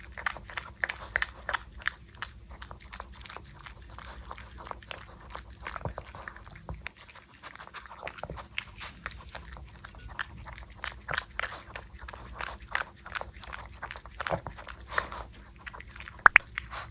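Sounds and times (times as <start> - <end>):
puppy chewing food: 0.0 - 16.9.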